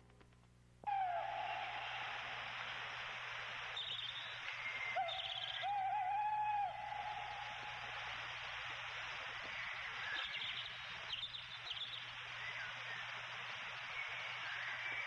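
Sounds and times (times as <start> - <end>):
steady hiss: 0.0 - 15.0
bird hooting call: 0.8 - 2.6, 3.8 - 8.2
bird chirps: 3.7 - 7.8, 9.4 - 15.0.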